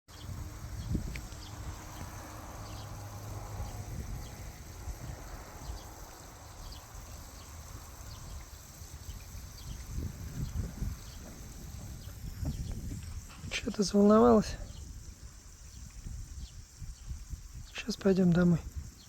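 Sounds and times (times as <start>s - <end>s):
distant thunder rumbling: 0.3s - 8.8s.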